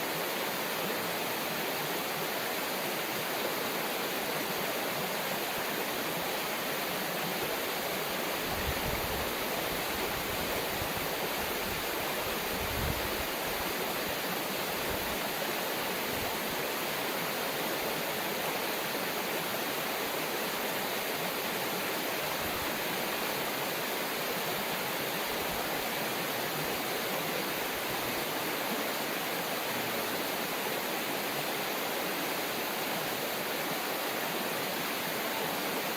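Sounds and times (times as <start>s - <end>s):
river rushing over rocks: 0.0s - 35.9s.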